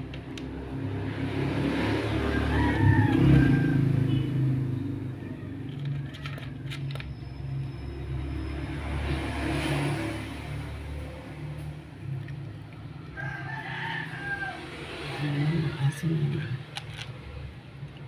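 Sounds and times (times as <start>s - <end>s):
passing vehicle rumble: 0.0s - 18.0s
rooster crowing: 1.9s - 6.6s, 13.0s - 16.0s.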